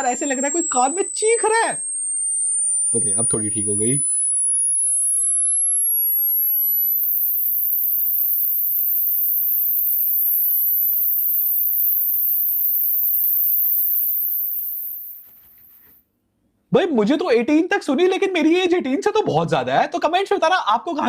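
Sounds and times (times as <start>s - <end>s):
high sine test tone climbing: 0.0s - 15.8s.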